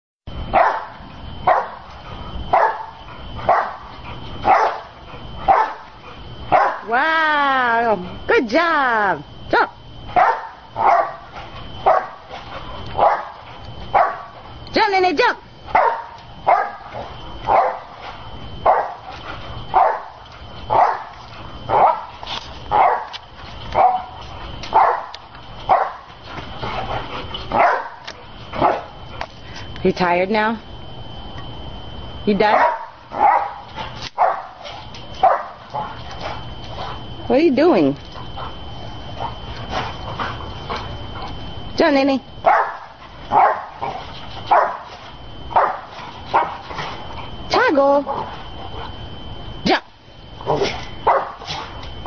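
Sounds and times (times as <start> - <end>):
dog barking: 0.5 - 1.8, 2.5 - 2.9, 3.5 - 3.8, 4.5 - 4.9, 5.5 - 5.8, 6.5 - 6.9, 10.2 - 11.2, 11.8 - 12.2, 13.0 - 13.3, 14.0 - 14.3, 15.7 - 16.9, 17.5 - 17.9, 18.6 - 19.0, 19.7 - 20.1, 20.7 - 21.1, 21.7 - 22.1, 22.7 - 23.2, 23.8 - 26.1, 27.6 - 28.0, 28.6 - 28.9, 32.5 - 33.6, 34.2 - 34.6, 35.2 - 35.6, 42.4 - 43.8, 44.5 - 44.8, 45.6 - 46.6, 51.0 - 51.4.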